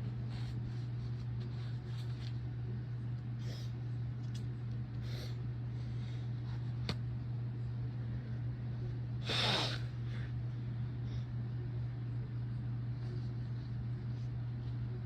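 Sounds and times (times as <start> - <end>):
electric fan humming: 0.0 - 15.0
person sneezing: 9.2 - 9.9.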